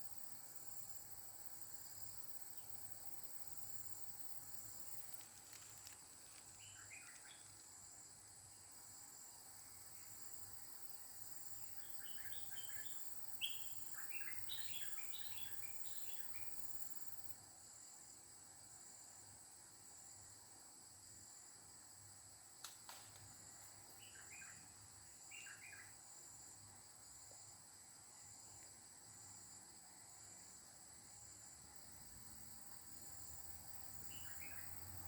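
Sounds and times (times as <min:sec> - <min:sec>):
high insect drone: 0:00.0 - 0:35.0
bird chirping: 0:06.6 - 0:07.5, 0:11.7 - 0:16.7, 0:24.0 - 0:26.0, 0:34.0 - 0:35.0.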